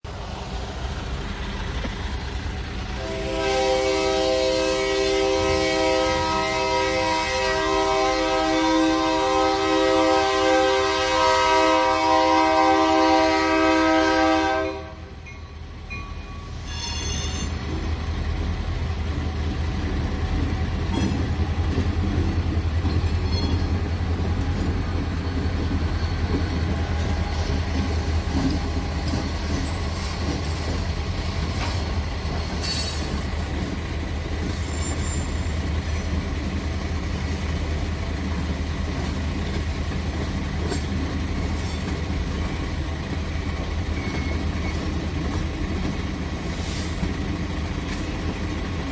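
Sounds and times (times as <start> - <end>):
train rumbling on rails: 0.0 - 48.9
high-pitched wheel squeal: 16.6 - 17.6, 34.6 - 35.6, 43.9 - 44.9.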